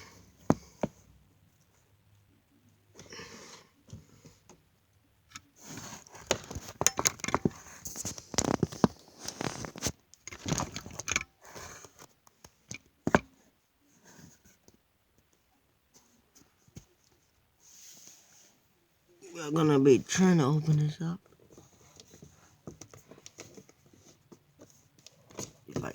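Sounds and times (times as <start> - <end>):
plastic and cardboard crinkling: 5.6 - 11.1.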